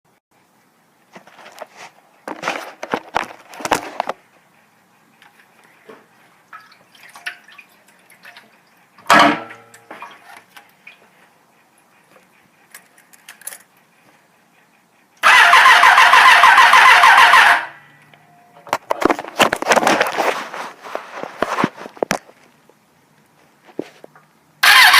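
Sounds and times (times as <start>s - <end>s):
electric starter cranking engine: 15.2s - 17.8s, 24.6s - 24.9s.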